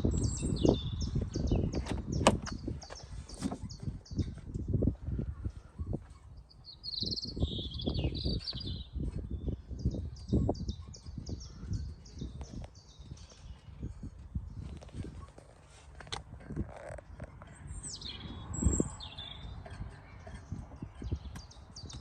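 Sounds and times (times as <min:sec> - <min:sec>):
bird trill: 0:00.0 - 0:01.8, 0:06.2 - 0:14.0, 0:17.5 - 0:22.0
birds chirping: 0:00.0 - 0:22.0
low rumble with thumps: 0:07.2 - 0:22.0.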